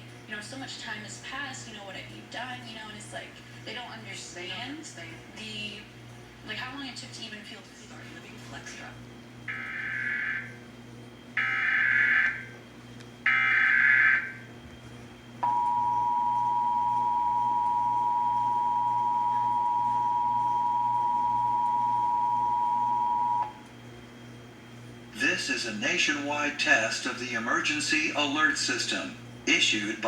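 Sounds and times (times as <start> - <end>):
two-tone alert signal: 15.4 - 23.6.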